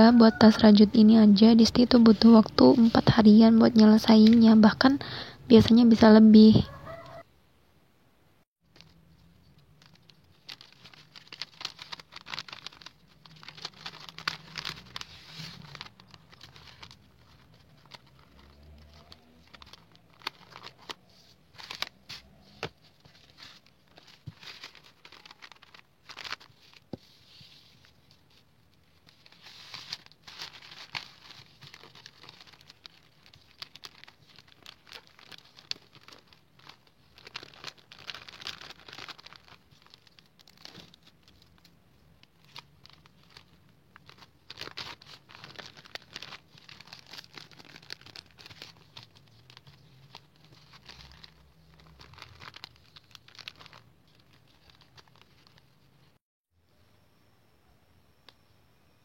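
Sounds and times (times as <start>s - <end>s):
packaging crinkling and rustling: 8.7s - 56.2s.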